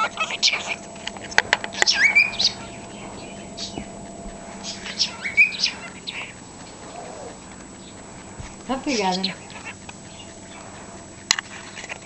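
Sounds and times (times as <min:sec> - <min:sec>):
cockatiel chirping: 0:00.0 - 0:12.0
cockatiel whistle: 0:04.6 - 0:07.4.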